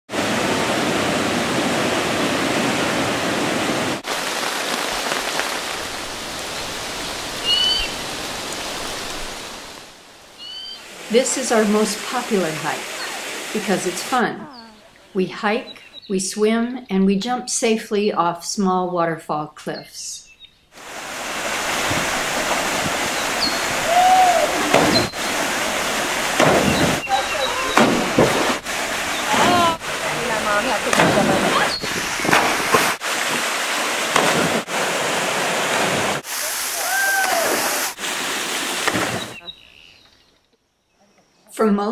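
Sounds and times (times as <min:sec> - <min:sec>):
rushing water: 0:00.1 - 0:15.9, 0:20.8 - 0:39.5.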